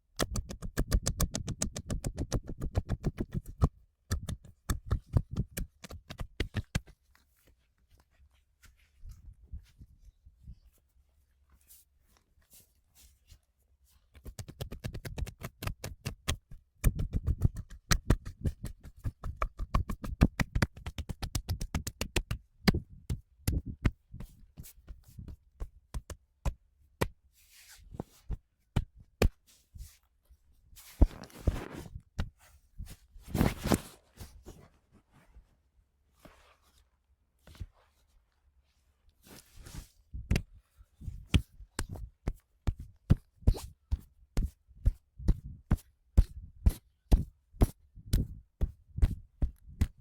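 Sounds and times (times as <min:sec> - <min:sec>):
hands slapping a body: 0:00.1 - 0:07.2, 0:14.1 - 0:27.2, 0:28.0 - 0:29.5, 0:39.3 - 0:50.0
hands rubbing on skin: 0:00.3 - 0:10.0.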